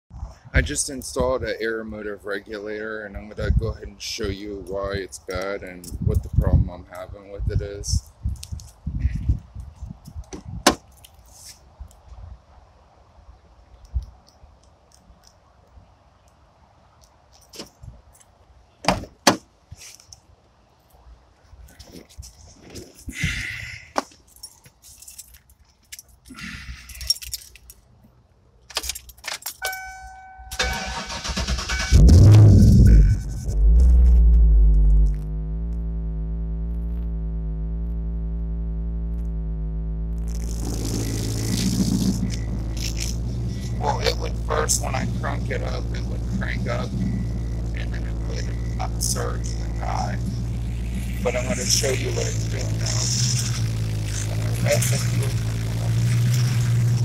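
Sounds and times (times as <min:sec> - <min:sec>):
car engine starting and idling: 0:28.7 - 0:57.0.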